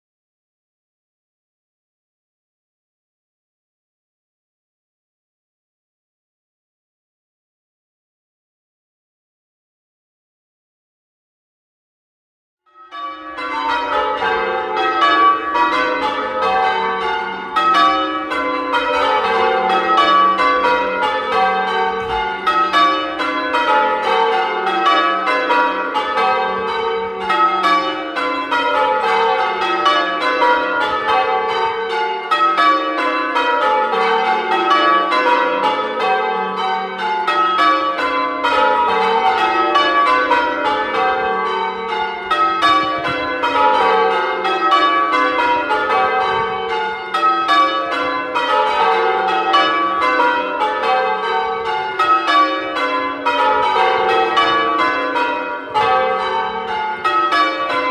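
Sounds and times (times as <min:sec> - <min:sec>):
church bells change ringing: 0:12.7 - 0:57.9.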